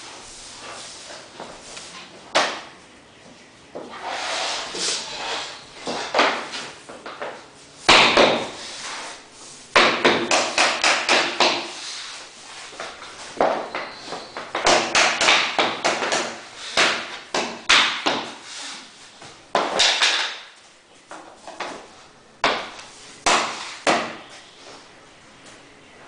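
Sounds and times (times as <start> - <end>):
boards scraping and rustling: 0.0 - 9.6, 11.2 - 14.7
floor planks knocking: 5.8 - 8.6, 9.7 - 11.8.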